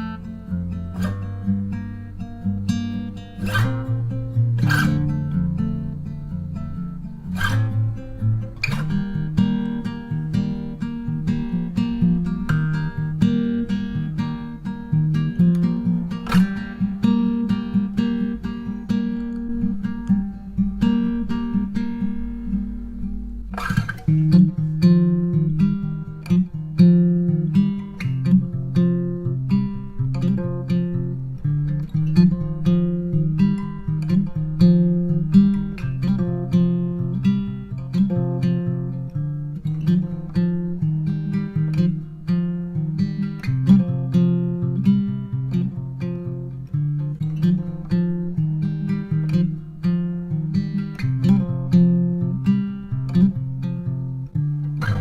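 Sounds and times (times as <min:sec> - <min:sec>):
acoustic guitar strumming: 0:00.0 - 0:55.0
bass line: 0:54.8 - 0:55.0.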